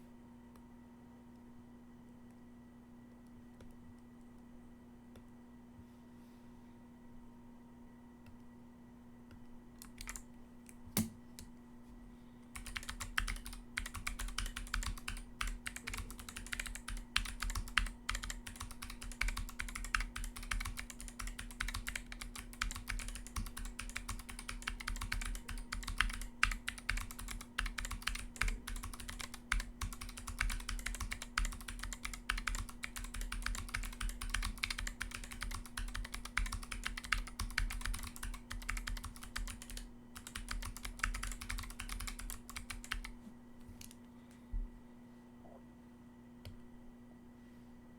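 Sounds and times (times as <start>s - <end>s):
fast mechanical keyboard typing: 9.8s - 10.2s, 12.6s - 43.1s.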